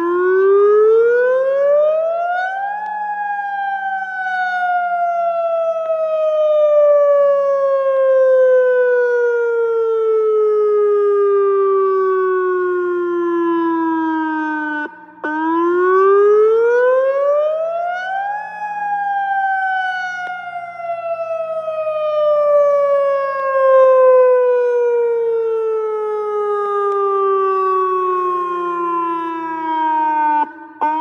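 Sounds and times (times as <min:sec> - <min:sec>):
warning siren wailing: 0:00.0 - 0:31.0.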